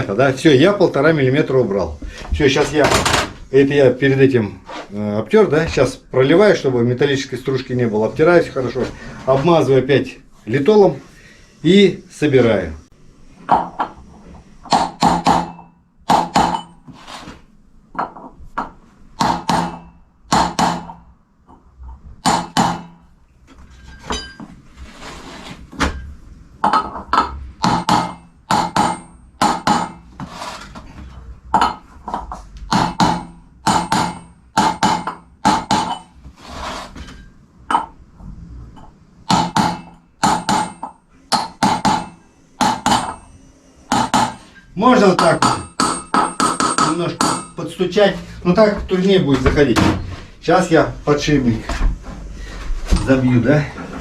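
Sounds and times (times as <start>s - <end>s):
hammer striking metal: 14.7s - 16.8s, 19.2s - 21.0s, 22.2s - 23.0s, 27.6s - 30.0s, 32.7s - 36.1s, 39.3s - 43.3s, 43.9s - 47.6s.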